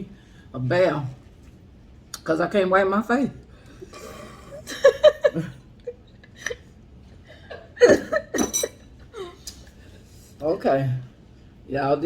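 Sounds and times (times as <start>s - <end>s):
person laughing: 4.2s - 6.7s, 7.3s - 8.6s.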